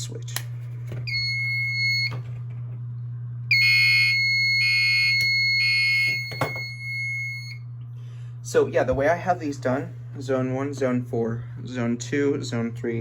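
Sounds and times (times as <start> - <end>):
steady high-pitched alarm tone: 1.1 - 2.2, 3.5 - 7.6
pulsed alarm horn blasts: 3.5 - 7.6.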